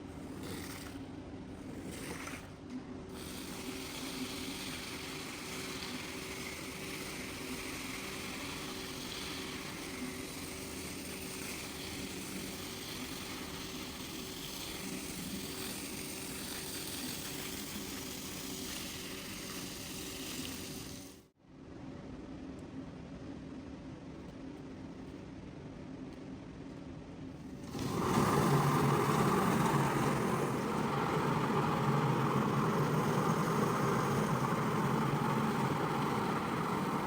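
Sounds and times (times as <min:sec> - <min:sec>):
water hissing: 0:03.2 - 0:21.2, 0:27.6 - 0:37.0
motor hum: 0:27.4 - 0:37.0.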